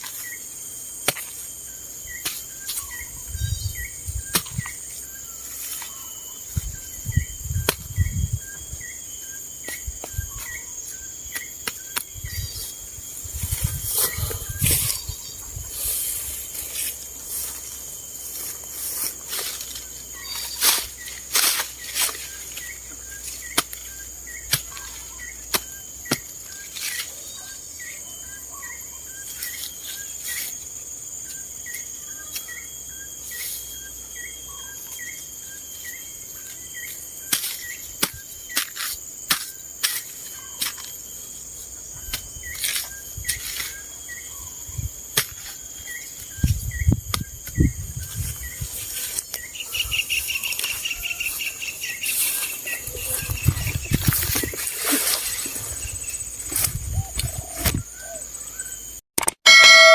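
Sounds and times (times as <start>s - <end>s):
high-pitched insect drone: 0.0s - 59.9s
sharp clicks and knocks: 59.2s - 59.5s
short chirp: 59.4s - 59.9s.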